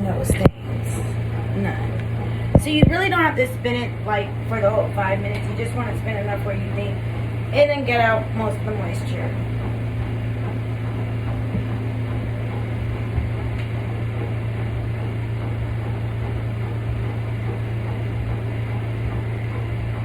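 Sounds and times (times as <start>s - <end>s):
spin dryer motor humming: 0.0s - 20.0s.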